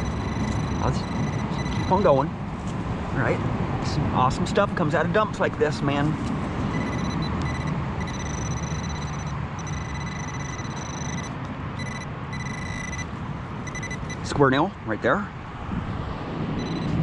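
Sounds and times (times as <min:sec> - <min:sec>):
metal detector high steady tone: 0:00.0 - 0:02.2, 0:06.7 - 0:14.4, 0:16.6 - 0:17.0.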